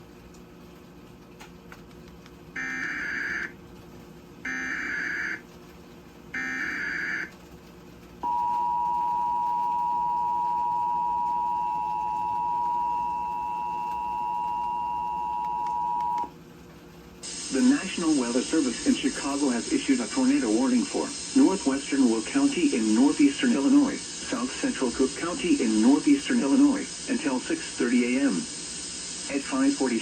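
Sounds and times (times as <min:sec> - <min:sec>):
screeching data bursts: 0:17.2 - 0:30.0.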